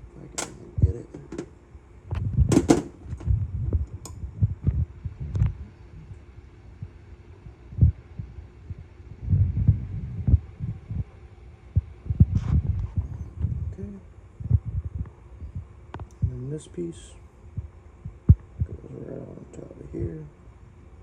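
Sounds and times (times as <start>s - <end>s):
dull thumps and knocks: 2.5s - 3.3s.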